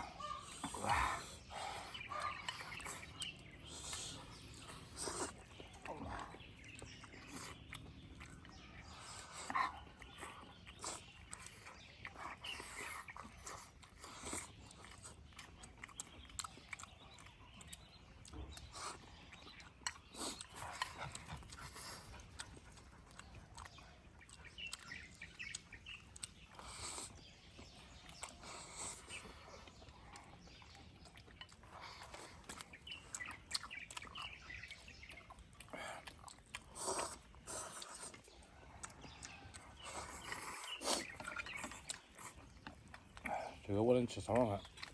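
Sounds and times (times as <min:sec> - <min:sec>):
people chewing and slurping: 0:00.0 - 0:44.9.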